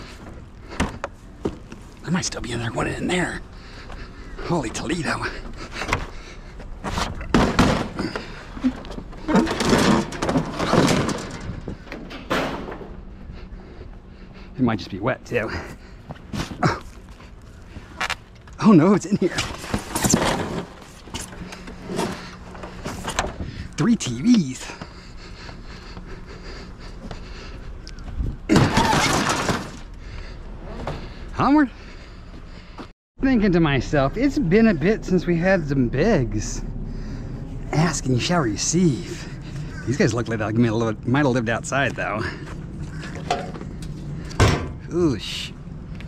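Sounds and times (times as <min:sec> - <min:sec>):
junk knocking and scraping: 0:05.3 - 0:13.2, 0:19.2 - 0:23.7, 0:28.2 - 0:29.9, 0:42.3 - 0:44.9
television crashing down: 0:09.3 - 0:11.6, 0:28.5 - 0:29.8.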